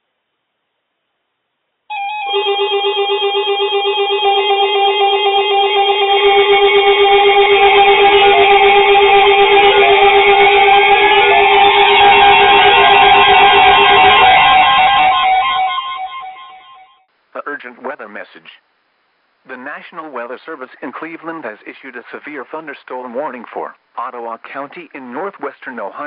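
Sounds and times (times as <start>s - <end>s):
instrumental music: 1.9s - 17.0s
rising sliding notes: 3.9s - 16.9s.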